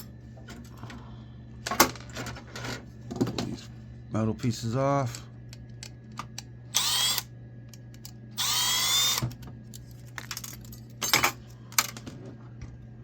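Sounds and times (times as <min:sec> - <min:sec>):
power drill whine: 0:06.7 - 0:07.3, 0:08.4 - 0:09.3
metal parts clinking: 0:09.7 - 0:12.0.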